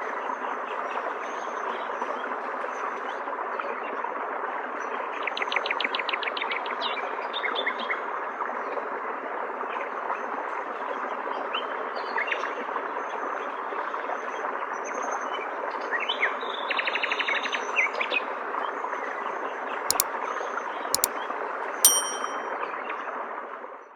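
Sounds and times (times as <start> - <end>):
sharp clicks: 21.9 - 22.4.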